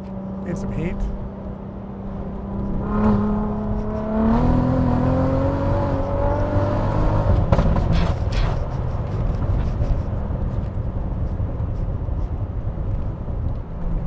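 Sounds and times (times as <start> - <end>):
car engine accelerating: 0.0 - 8.3.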